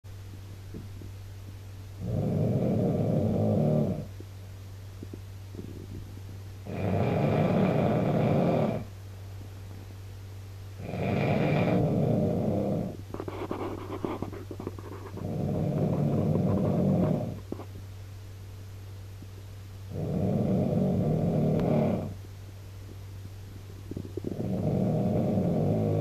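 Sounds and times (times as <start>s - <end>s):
man snoring loudly: 2.0s - 4.1s, 6.7s - 8.9s, 10.8s - 13.0s, 19.9s - 22.2s, 24.3s - 26.0s
faint crackle: 3.8s - 6.5s, 11.1s - 18.0s, 21.0s - 26.0s.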